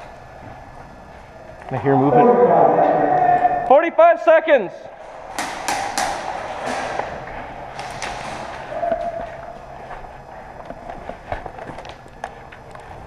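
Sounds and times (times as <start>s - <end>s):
airsoft gun shots: 5.3s - 7.0s.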